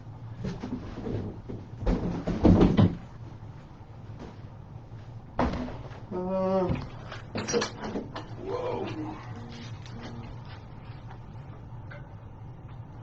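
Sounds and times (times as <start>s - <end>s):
bicycle and cardboard clunking: 0.4s - 3.1s.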